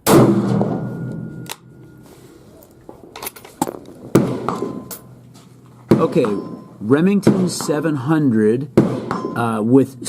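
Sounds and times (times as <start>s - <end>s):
rifle shot: 0.0s - 1.1s, 3.6s - 5.2s, 8.8s - 9.4s.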